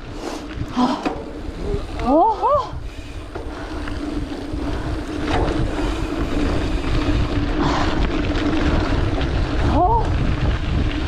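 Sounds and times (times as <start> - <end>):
bike tyre rumble on dirt: 0.0 - 11.0
wind buffeting microphone: 0.0 - 11.0
steady buzzing hum: 0.7 - 9.6.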